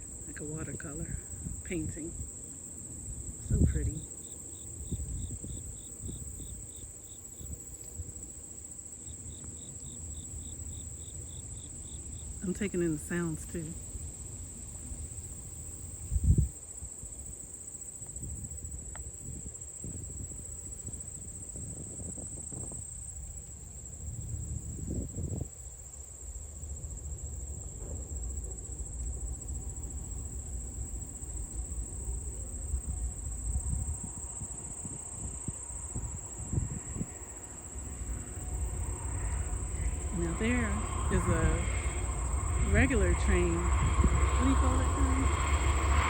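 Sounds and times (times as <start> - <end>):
low rumble: 27.3 - 46.0.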